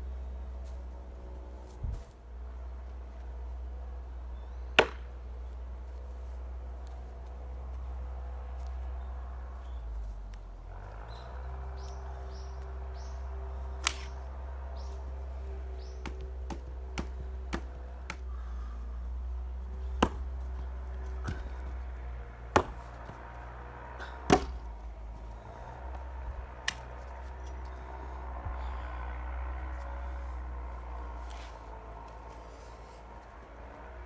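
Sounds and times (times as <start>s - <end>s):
axe chopping firewood: 4.8s - 5.2s, 13.8s - 14.2s, 15.8s - 18.4s, 19.5s - 24.8s, 25.8s - 27.1s
wood knocking: 20.0s - 20.3s, 22.6s - 23.2s, 24.3s - 24.6s.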